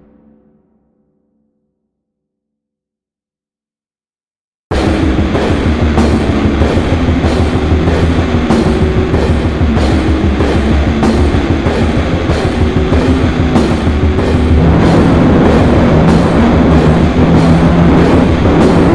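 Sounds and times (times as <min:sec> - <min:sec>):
distorted metal guitars: 0:04.7 - 0:18.9
fast dense drumming: 0:04.7 - 0:18.9.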